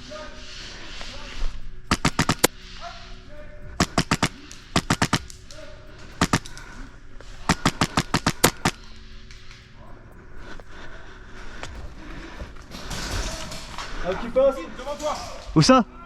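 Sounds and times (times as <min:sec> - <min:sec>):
airsoft rifle firing bursts: 0:01.9 - 0:02.5, 0:03.8 - 0:05.4, 0:06.2 - 0:06.5, 0:07.5 - 0:08.8.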